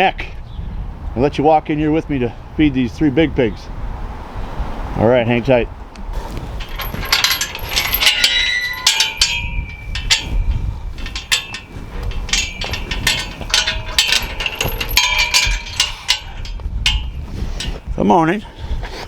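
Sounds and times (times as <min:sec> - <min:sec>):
metal clanking and rattling: 0:06.2 - 0:17.9.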